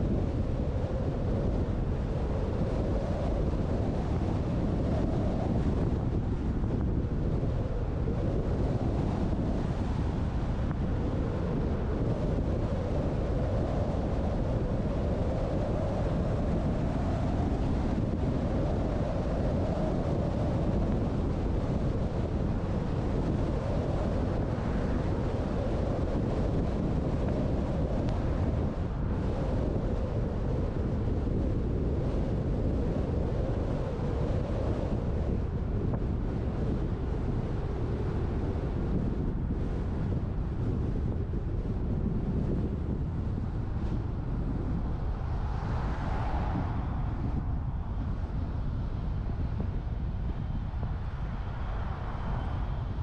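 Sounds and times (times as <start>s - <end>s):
wind rushing on microphone: 0.0s - 53.0s.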